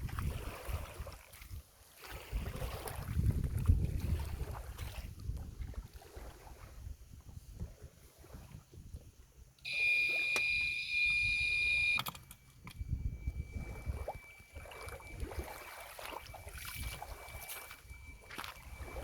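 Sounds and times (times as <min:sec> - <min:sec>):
high-pitched electronic alarm tone: 0:09.6 - 0:19.0.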